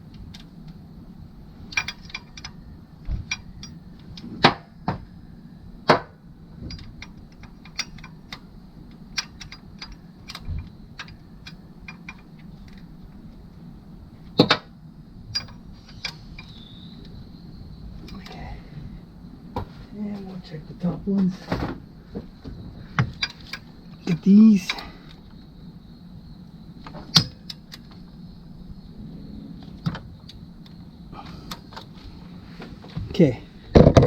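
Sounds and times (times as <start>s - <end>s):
loud knocks: 33.7s - 34.0s.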